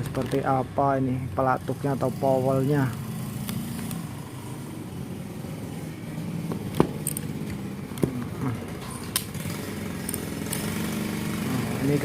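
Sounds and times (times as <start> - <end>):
sharp metal clicks: 8.9 - 11.0.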